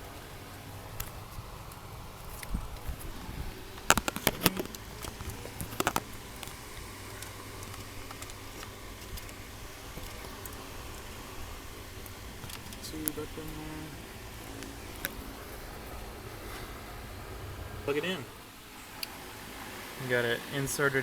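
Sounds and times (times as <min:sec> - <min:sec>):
plastic parts clicking and rattling: 0:03.7 - 0:09.4.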